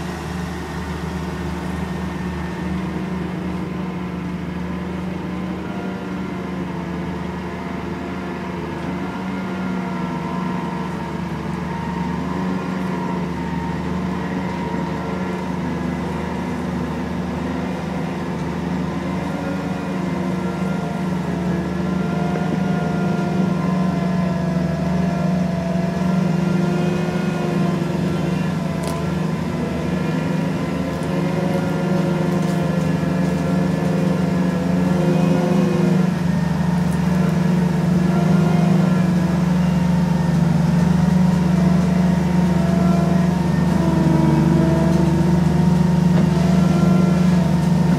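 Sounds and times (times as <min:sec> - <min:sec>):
combine harvester engine running: 0:00.0 - 0:47.9.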